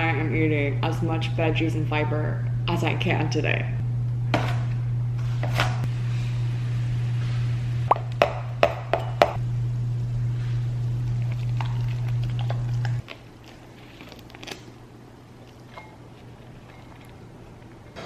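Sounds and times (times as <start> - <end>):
kitchen appliance humming: 0.0 - 18.0
dishes and utensils clicking: 15.6 - 18.0.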